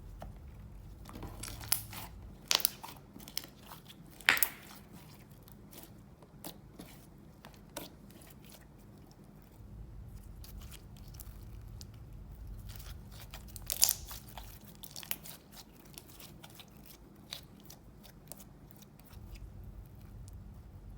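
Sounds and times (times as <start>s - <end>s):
slime squished by hand: 1.0s - 7.0s, 12.6s - 20.5s.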